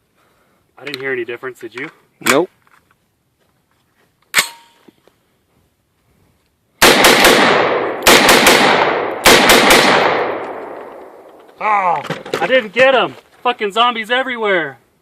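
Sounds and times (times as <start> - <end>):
gunshots: 6.8 - 11.2.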